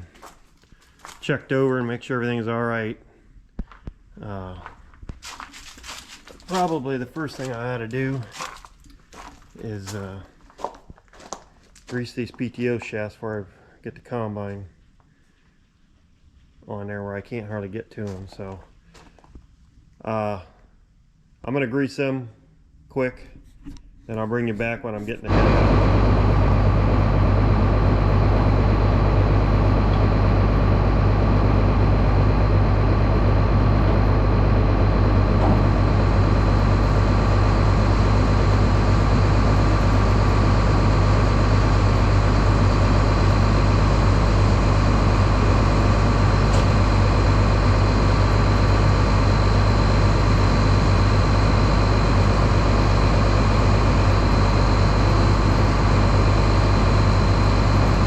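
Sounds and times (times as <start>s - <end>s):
thin steady whine: 24.1s - 58.0s
combine diesel engine drone: 25.2s - 58.0s.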